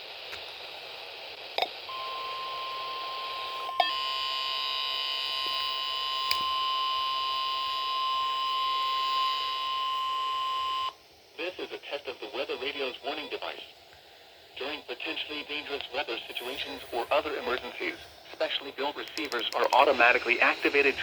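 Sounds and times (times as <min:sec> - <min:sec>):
buzzy multi-pitch tone layer: 0:16.0 - 0:18.6
sharp clicks: 0:19.0 - 0:19.8.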